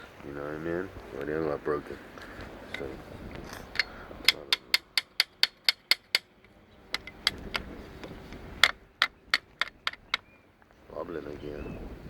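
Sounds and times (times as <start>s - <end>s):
electric starter clicking: 3.5s - 10.2s.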